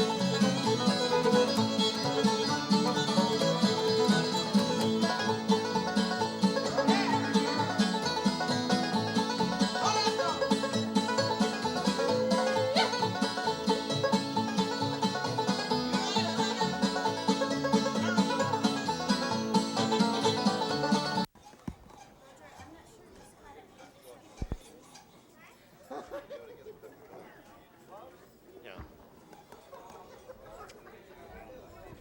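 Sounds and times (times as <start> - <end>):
bluegrass band playing: 0.0 - 21.3
banjo: 0.0 - 25.2.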